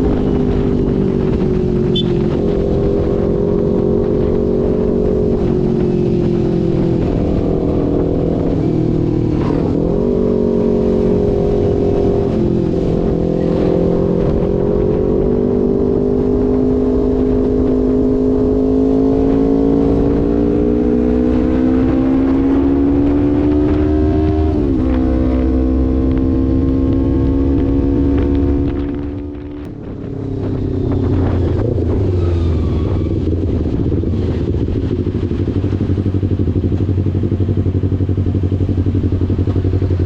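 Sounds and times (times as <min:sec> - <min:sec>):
motorcycle engine running: 0:00.0 - 0:40.0.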